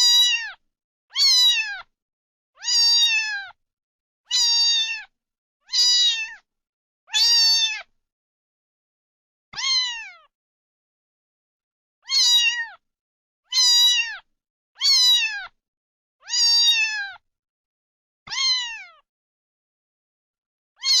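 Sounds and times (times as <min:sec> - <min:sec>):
cat meowing: 0:00.0 - 0:01.9, 0:02.6 - 0:03.6, 0:04.3 - 0:06.4, 0:07.1 - 0:07.9, 0:09.6 - 0:10.3, 0:12.0 - 0:12.8, 0:13.5 - 0:15.6, 0:16.2 - 0:17.2, 0:18.3 - 0:19.0, 0:20.8 - 0:21.0.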